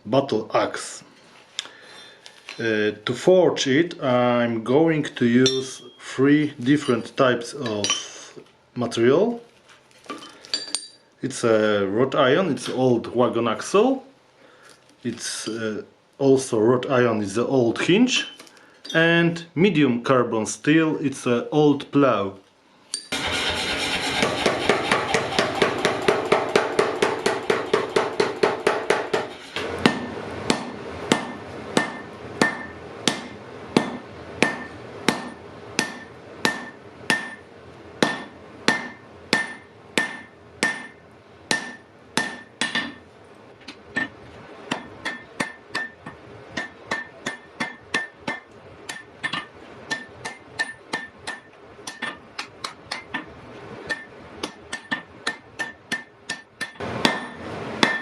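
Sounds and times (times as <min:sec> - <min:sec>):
hammer striking iron on anvil: 0:05.4 - 0:06.0, 0:24.0 - 0:43.0, 0:44.0 - 0:58.0.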